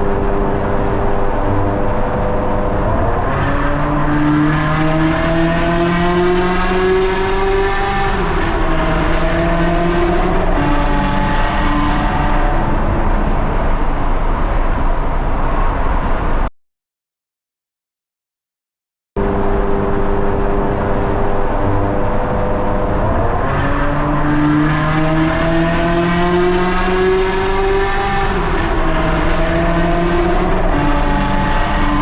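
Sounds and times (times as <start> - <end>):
car engine accelerating: 0.0 - 16.5, 19.2 - 32.0
road noise: 0.0 - 16.5, 19.2 - 32.0.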